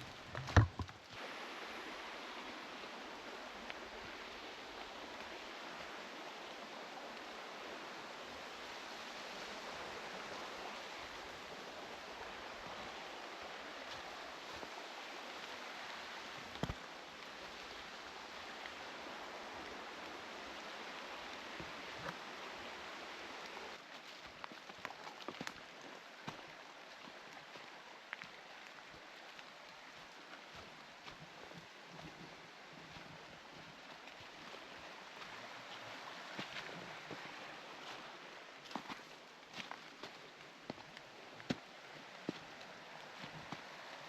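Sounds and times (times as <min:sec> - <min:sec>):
rain and running water: 0:00.0 - 0:44.0
water drips and ticks: 0:16.4 - 0:18.9, 0:20.9 - 0:22.3, 0:23.4 - 0:43.8.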